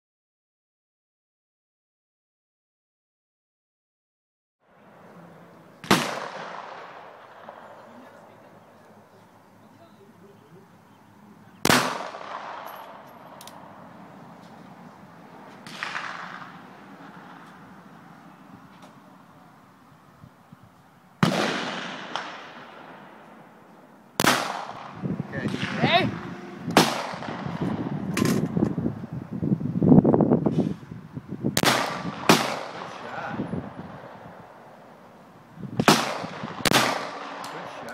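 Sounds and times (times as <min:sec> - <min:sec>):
low rumbling noise: 0:04.6 - 0:37.4
pistol shots: 0:05.8 - 0:08.2, 0:11.6 - 0:13.7, 0:15.6 - 0:16.6, 0:21.2 - 0:23.2, 0:24.2 - 0:27.8, 0:31.6 - 0:33.3, 0:35.8 - 0:37.9.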